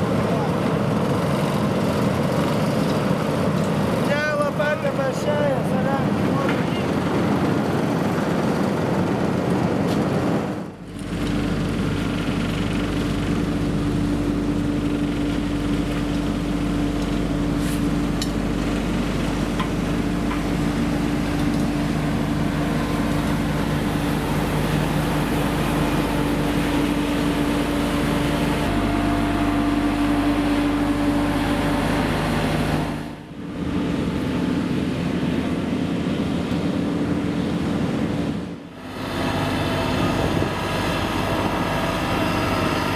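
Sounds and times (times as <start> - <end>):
vehicle engine running: 10.8 - 42.9.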